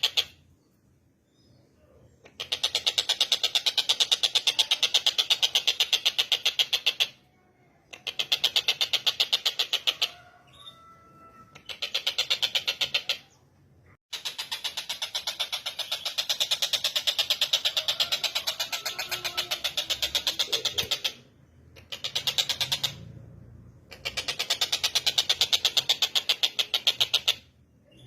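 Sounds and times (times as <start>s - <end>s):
kingfisher rattling chatter: 14.2s - 23.0s.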